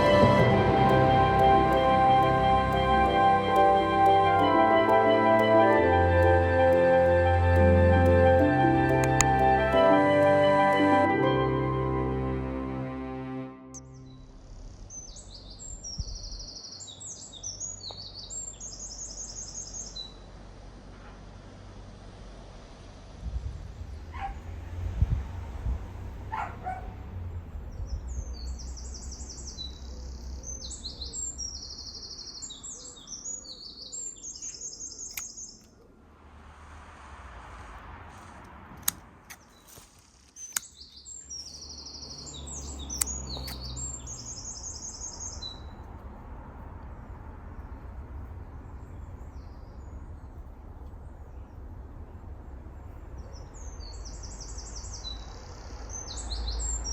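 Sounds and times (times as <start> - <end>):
low rumble: 0.0 - 16.7, 20.2 - 31.5, 35.7 - 40.2, 42.0 - 56.5
songbird trilling: 40.4 - 45.7.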